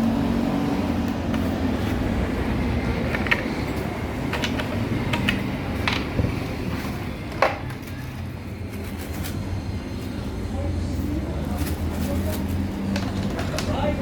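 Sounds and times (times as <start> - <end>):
small parts clicking and knocking: 3.0 - 6.2.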